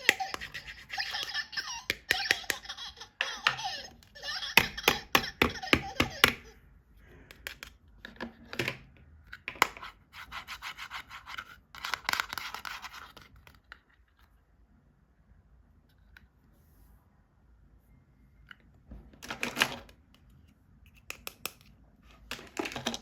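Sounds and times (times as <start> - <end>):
plastic toys handled: 0.0 - 14.6, 19.2 - 23.0
sharp plastic clicks: 20.9 - 21.7.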